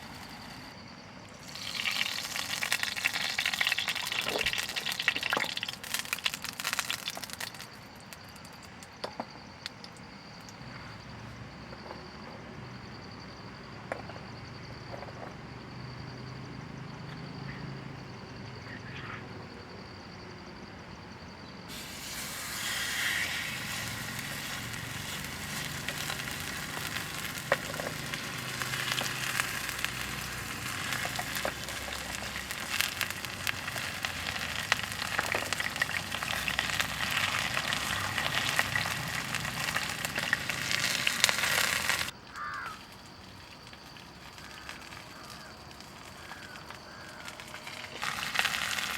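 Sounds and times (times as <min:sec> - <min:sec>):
food sizzling in a pan: 0:01.3 - 0:08.7, 0:21.7 - 0:42.7, 0:43.6 - 0:48.9.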